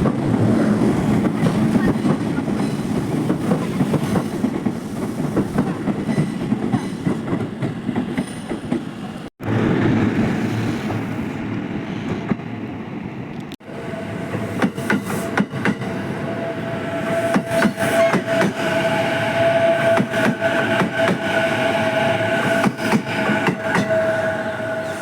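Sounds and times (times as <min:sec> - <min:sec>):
electric train running past: 0:13.1 - 0:25.0.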